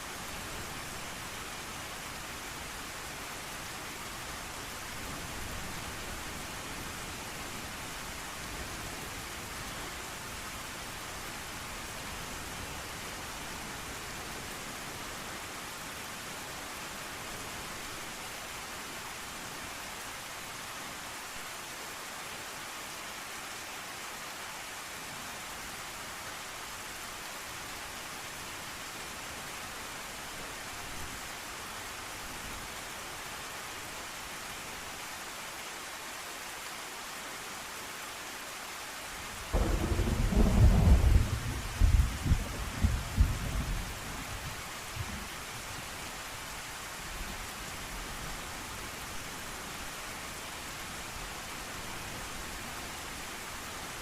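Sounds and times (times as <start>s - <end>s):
steady rain hissing: 0.0s - 54.0s
thunderclap rumbling and crackling: 39.6s - 43.8s.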